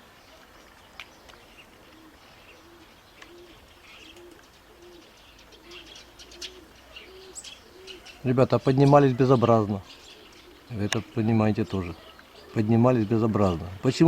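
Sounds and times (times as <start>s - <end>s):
pigeon cooing: 1.2s - 13.8s
high bird chirps: 2.4s - 13.2s.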